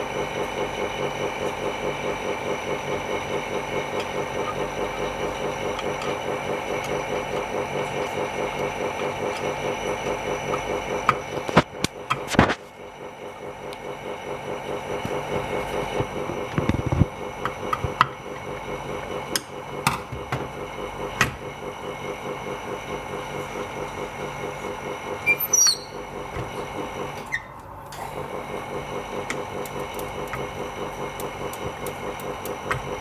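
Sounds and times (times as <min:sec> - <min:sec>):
laminating machine motor humming: 0:00.0 - 0:33.0
short squeak: 0:25.2 - 0:26.0.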